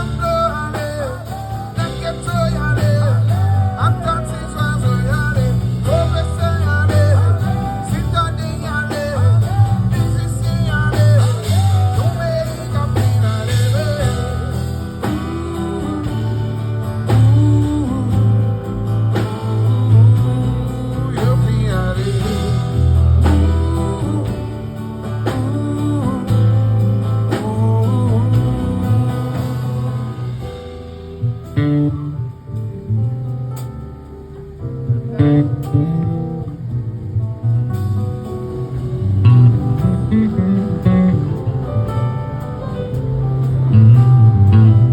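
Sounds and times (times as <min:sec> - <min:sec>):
bass line: 0:00.0 - 0:44.9
guitar chords: 0:00.0 - 0:44.9
live band music: 0:00.0 - 0:44.9.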